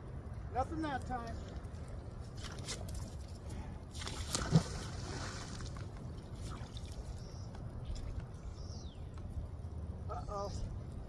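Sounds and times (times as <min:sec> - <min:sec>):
magnet splashing into water: 0:03.9 - 0:05.8.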